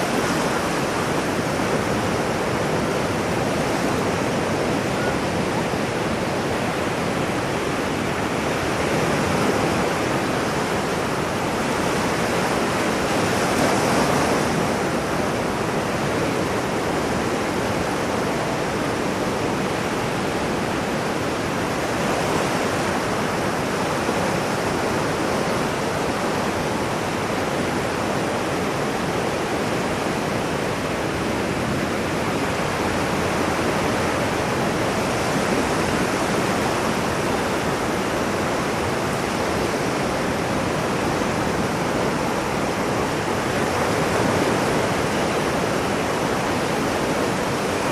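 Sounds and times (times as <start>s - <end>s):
ocean waves breaking on shore: 0.0s - 47.9s.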